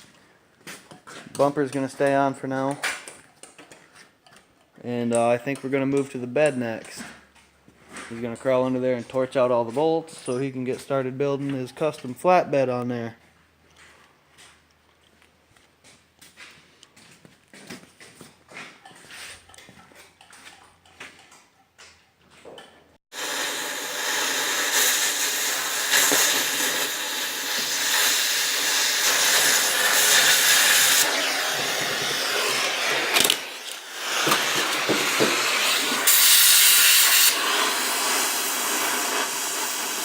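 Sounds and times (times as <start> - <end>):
cutting torch hissing: 23.1 - 40.0.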